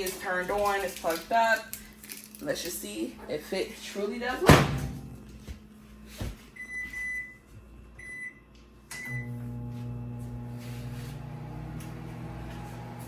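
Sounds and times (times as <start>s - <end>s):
microwave oven humming: 4.2s - 13.0s
microwave keypad beeps: 6.6s - 7.4s, 8.0s - 8.4s, 9.0s - 9.4s.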